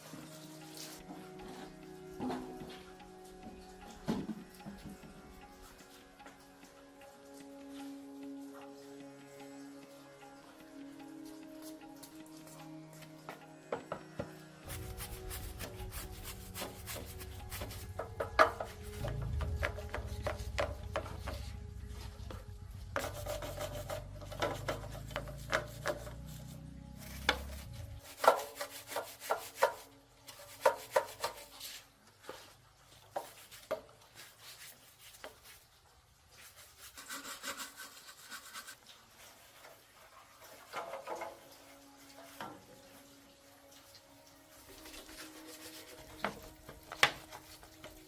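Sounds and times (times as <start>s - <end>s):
low steady hum: 14.7s - 28.1s
rubbing and scraping strokes: 14.7s - 32.5s, 33.1s - 42.4s, 44.5s - 48.0s.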